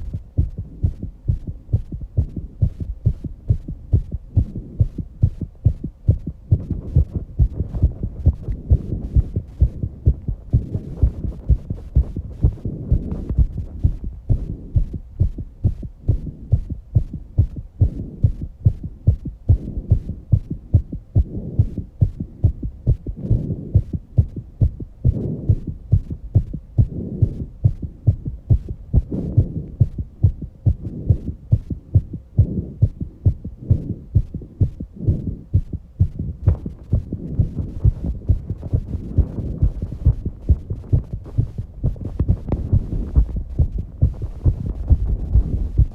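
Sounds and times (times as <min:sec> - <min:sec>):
fast heartbeat thumps: 0:00.0 - 0:45.9.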